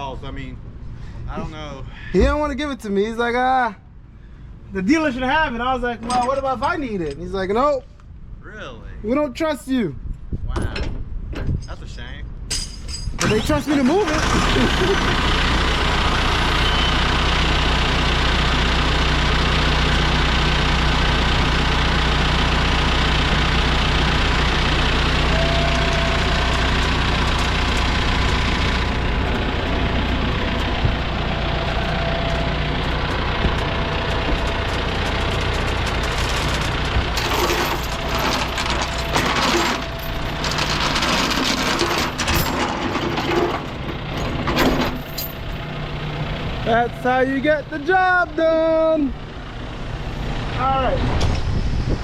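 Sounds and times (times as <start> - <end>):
metallic clinks and rattles: 12.5 - 13.2, 33.8 - 45.6
tractor diesel engine running: 13.2 - 52.0.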